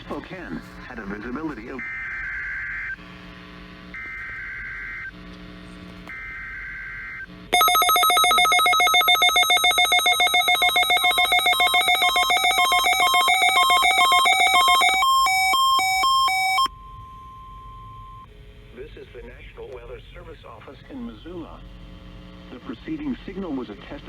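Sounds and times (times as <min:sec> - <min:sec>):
screeching data bursts: 0:07.6 - 0:16.7
electronic alarm beeping: 0:07.6 - 0:18.3
steady warning tone: 0:07.6 - 0:18.3.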